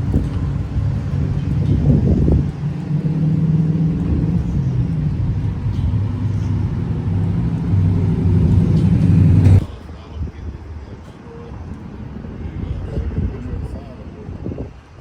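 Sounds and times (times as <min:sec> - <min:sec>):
truck engine drone: 0:00.0 - 0:09.9
road noise: 0:00.0 - 0:15.0.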